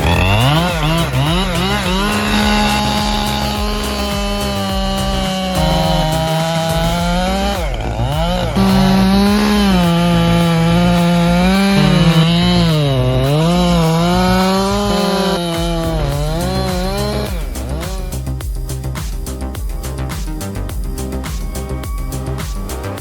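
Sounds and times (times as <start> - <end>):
chainsaw cutting wood: 0.0 - 18.2.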